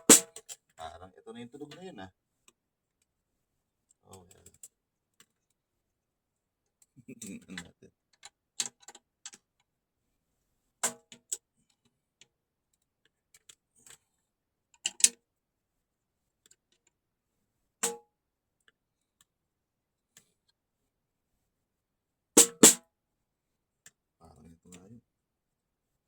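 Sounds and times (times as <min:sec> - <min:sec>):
snare drum hits: 0:00.0 - 0:00.4, 0:22.4 - 0:22.8.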